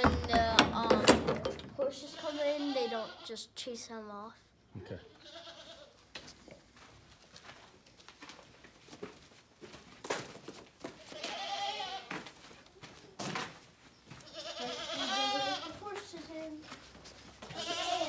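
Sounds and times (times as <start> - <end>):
goat bleating: 2.1 - 3.3, 4.8 - 6.0, 11.0 - 12.1, 14.2 - 15.8, 17.4 - 18.0.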